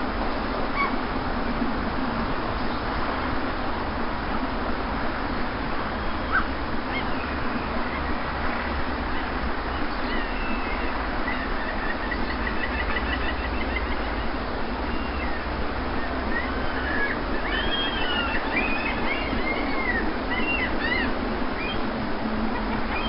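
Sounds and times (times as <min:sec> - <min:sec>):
sea surf on a beach: 0:00.0 - 0:23.0
bird trilled call: 0:06.0 - 0:08.1, 0:09.1 - 0:21.9, 0:22.5 - 0:23.0
birds whistling: 0:06.0 - 0:08.2, 0:09.1 - 0:21.9, 0:22.5 - 0:23.0.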